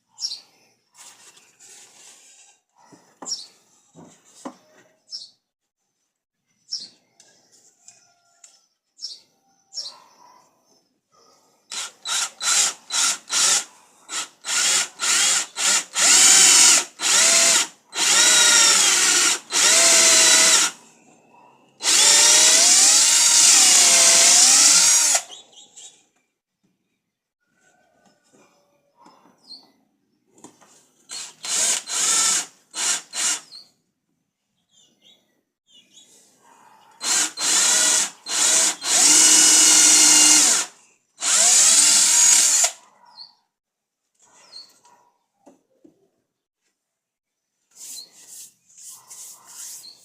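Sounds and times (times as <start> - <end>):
electric drill running: 11.7 - 20.8, 21.8 - 25.3, 31.1 - 33.5, 37.0 - 42.8.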